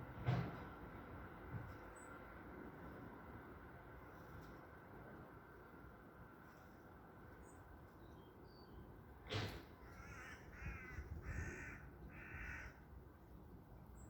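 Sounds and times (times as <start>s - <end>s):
bird harsh calls: 9.8s - 12.7s.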